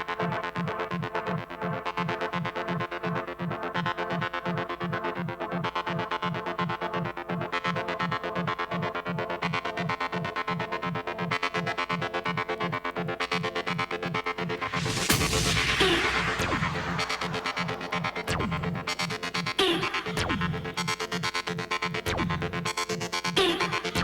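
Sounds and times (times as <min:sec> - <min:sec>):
electronic dance music: 0:14.4 - 0:21.3, 0:23.2 - 0:24.0.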